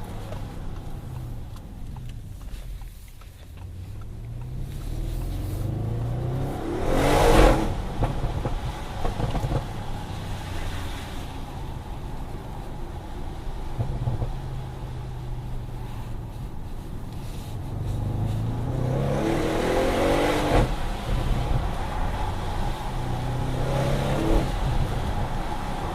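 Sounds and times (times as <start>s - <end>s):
light engine ticks: 0.0s - 4.6s
car engine accelerating: 0.0s - 25.9s.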